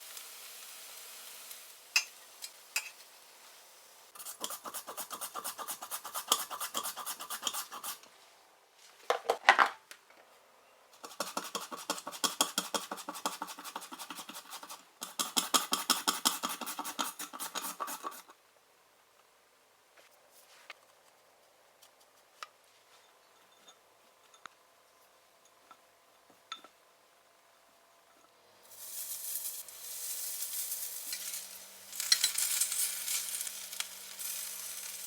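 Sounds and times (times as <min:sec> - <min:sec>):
vegetables rasping on a grater: 0:04.2 - 0:08.0.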